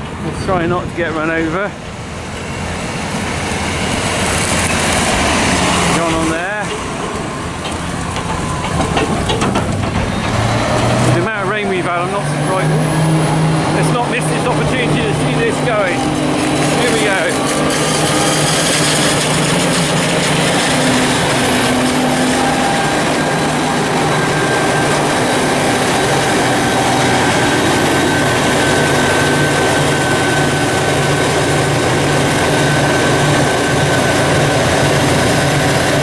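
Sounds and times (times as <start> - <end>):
harvester engine droning: 0.0 - 36.0
high machine whine: 2.2 - 36.0.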